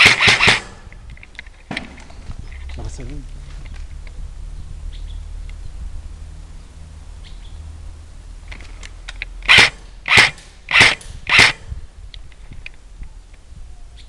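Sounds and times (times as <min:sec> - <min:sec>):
airsoft gun shots: 0:00.0 - 0:00.9, 0:09.5 - 0:11.7.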